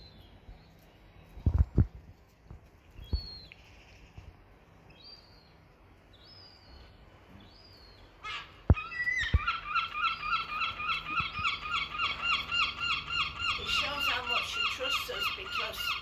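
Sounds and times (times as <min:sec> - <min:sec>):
seagull chick begging calls: 0:08.2 - 0:16.0.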